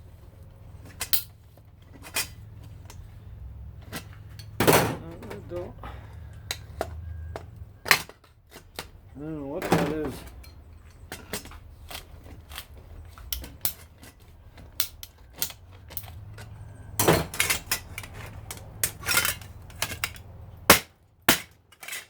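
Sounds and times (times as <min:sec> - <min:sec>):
metal parts clanking: 0:00.8 - 0:03.0, 0:03.8 - 0:05.8, 0:06.4 - 0:22.0
metallic clicks and clinks of tools: 0:01.0 - 0:01.3, 0:09.9 - 0:20.8, 0:21.4 - 0:22.0.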